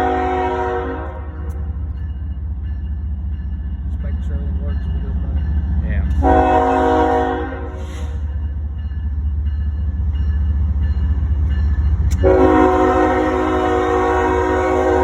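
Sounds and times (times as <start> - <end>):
train air horn: 0.0 - 1.3, 6.2 - 8.2, 12.2 - 15.0
diesel locomotive rumbling: 0.0 - 15.0.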